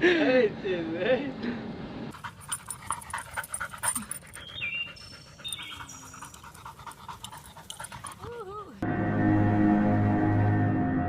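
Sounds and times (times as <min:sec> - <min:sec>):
animal panting: 0:02.1 - 0:08.8.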